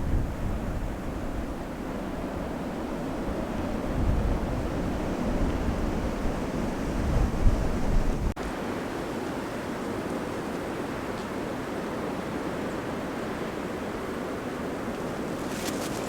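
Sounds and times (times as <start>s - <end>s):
steady wind: 0.0s - 16.0s
short crackles: 15.4s - 16.0s.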